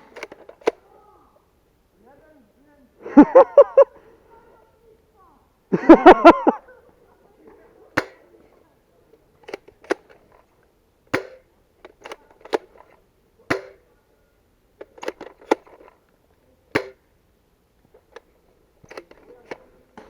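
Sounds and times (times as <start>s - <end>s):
airsoft gun shots: 7.9s - 8.4s, 9.4s - 10.4s, 11.1s - 13.9s, 14.8s - 15.9s, 16.7s - 17.1s.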